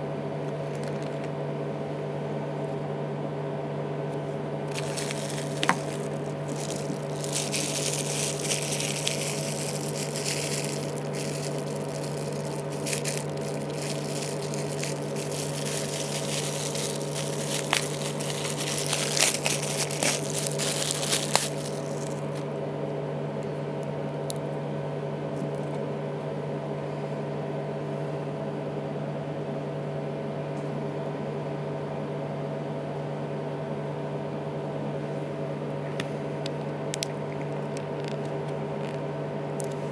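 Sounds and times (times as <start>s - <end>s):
steady electrical hum: 0.0s - 30.0s
scraping and rustling of small parts: 4.7s - 22.4s.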